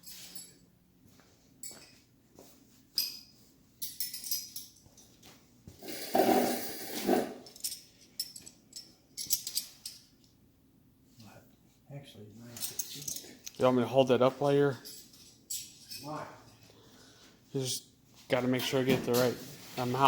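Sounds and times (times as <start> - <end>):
metal wrenches clinking: 2.9 - 5.1, 7.0 - 10.2, 12.6 - 13.6, 14.7 - 16.6.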